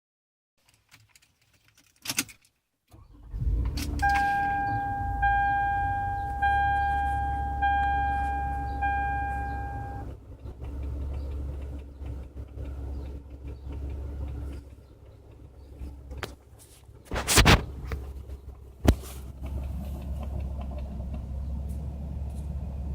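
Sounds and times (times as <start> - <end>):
car engine starting and idling: 2.9 - 22.9
warning chime: 4.0 - 10.0.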